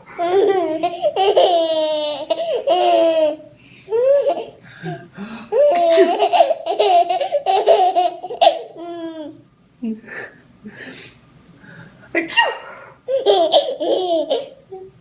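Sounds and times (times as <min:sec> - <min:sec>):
baby laughing: 0:00.0 - 0:04.6, 0:05.5 - 0:09.4, 0:12.4 - 0:14.9
woman sneezing: 0:12.2 - 0:12.9.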